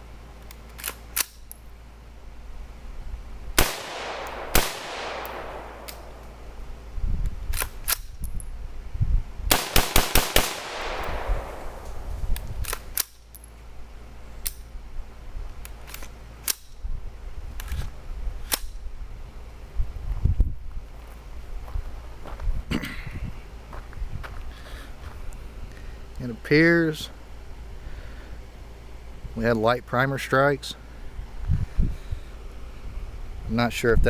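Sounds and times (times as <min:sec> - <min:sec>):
rifle shots echoing: 0:03.6 - 0:06.7, 0:09.5 - 0:12.4.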